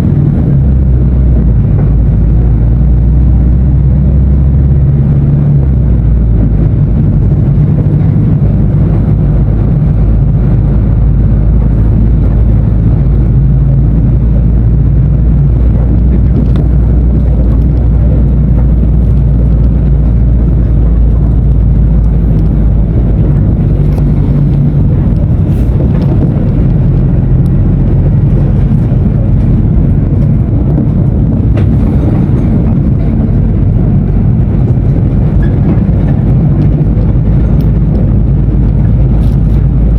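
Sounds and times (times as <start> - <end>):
bus diesel engine humming: 0.0 - 39.9.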